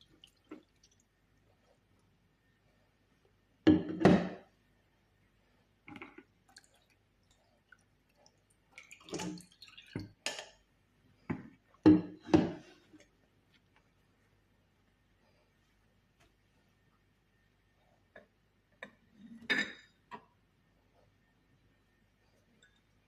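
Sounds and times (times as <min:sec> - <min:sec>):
kitchenware knocks and clinks: 0:03.7 - 0:04.4.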